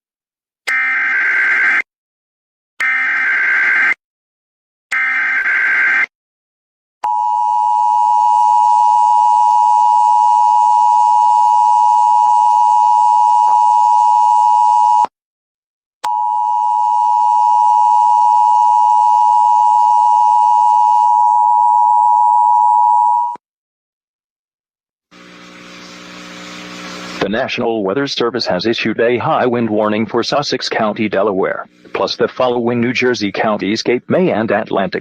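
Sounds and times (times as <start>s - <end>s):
two-tone emergency alert signal: 16.1s - 23.4s.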